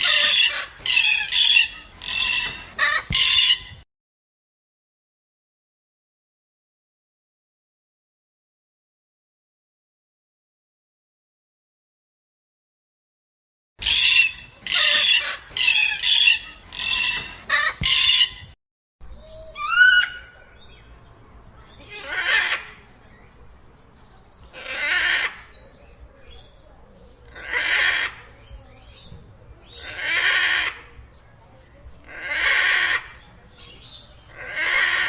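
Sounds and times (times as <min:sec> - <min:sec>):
macaws squawking: 0:00.0 - 0:03.8, 0:13.8 - 0:18.6, 0:19.6 - 0:20.4, 0:24.5 - 0:25.5, 0:27.3 - 0:28.3, 0:29.7 - 0:30.9, 0:32.0 - 0:33.2, 0:34.3 - 0:35.0.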